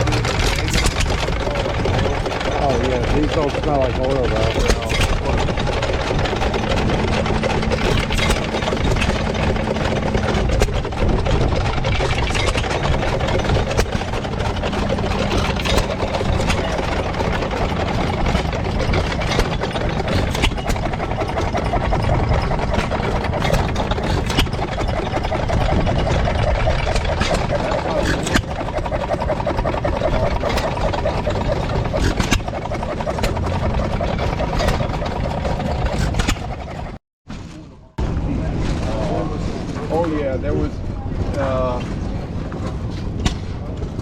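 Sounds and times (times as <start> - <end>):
gas engines chugging unevenly: 0.0 - 37.0.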